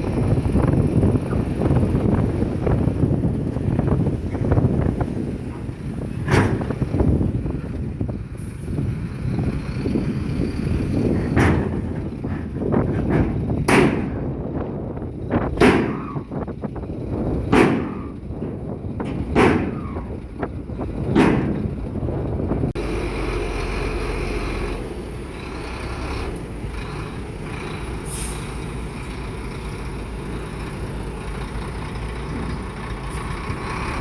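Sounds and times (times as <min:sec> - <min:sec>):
heavy diesel machinery rumbling: 0:00.0 - 0:34.0
loud sharp bangs: 0:11.3 - 0:12.0, 0:13.0 - 0:14.4, 0:15.5 - 0:16.4, 0:17.4 - 0:18.3, 0:19.0 - 0:20.2, 0:21.1 - 0:21.8.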